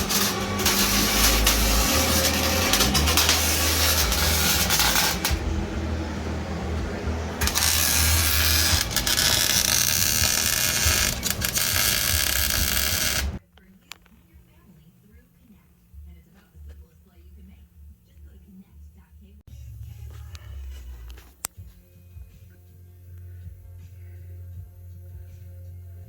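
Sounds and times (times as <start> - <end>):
welding arc crackling and hissing: 0.0 - 5.8, 7.4 - 13.4.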